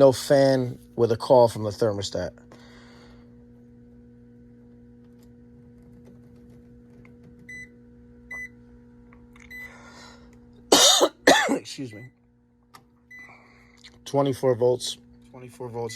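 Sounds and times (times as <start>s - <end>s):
low electrical hum: 0.0s - 15.9s
multimeter beeps: 7.5s - 7.7s, 8.3s - 8.6s, 9.5s - 9.7s, 13.1s - 13.4s, 15.6s - 15.9s
person coughing: 10.7s - 11.8s.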